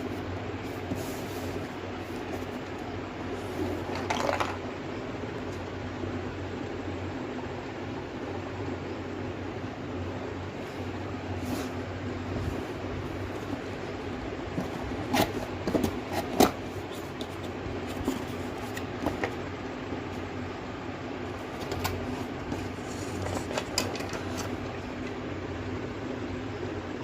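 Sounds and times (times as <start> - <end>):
fan-like hum: 0.0 - 27.0
packaging clicks and rustles: 14.5 - 19.4, 21.3 - 25.1.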